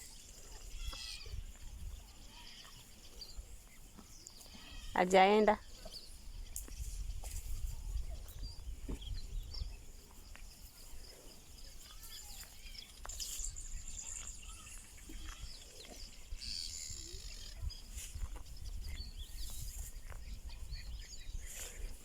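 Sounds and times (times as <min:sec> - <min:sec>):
wind rumbling on microphone: 0:00.0 - 0:22.0
high bird chirps: 0:11.8 - 0:21.7.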